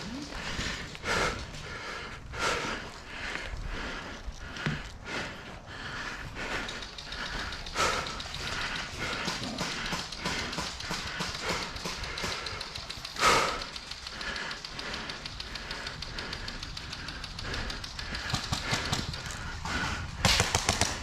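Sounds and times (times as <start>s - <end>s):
footsteps: 0.0s - 15.8s.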